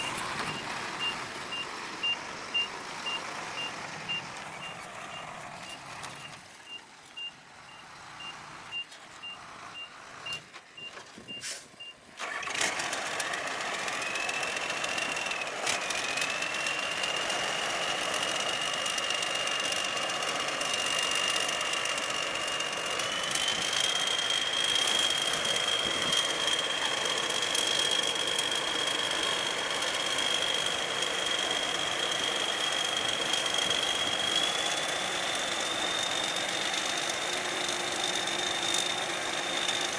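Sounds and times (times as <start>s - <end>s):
reversing alarm beeping: 0.0s - 12.0s, 20.8s - 39.9s
harvester engine and auger: 0.0s - 39.9s.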